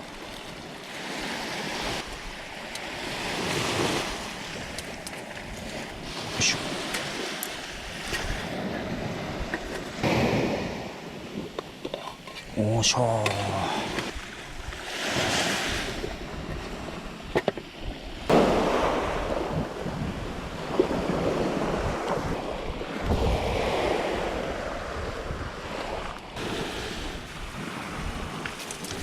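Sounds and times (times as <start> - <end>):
sea waves washing in: 0.0 - 29.0
wind buffeting microphone: 1.1 - 12.6, 13.7 - 29.0.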